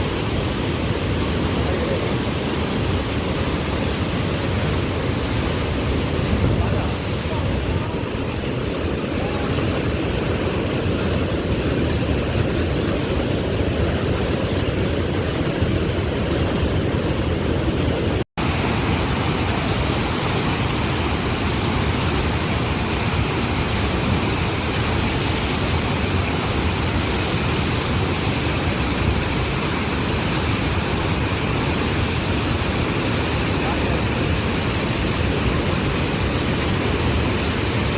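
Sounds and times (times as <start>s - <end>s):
waterfall rushing: 0.0s - 8.4s, 18.4s - 37.9s.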